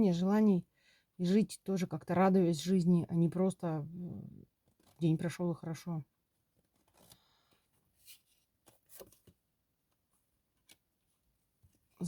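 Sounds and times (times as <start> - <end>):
cards rustling and tapping: 6.6 - 10.9.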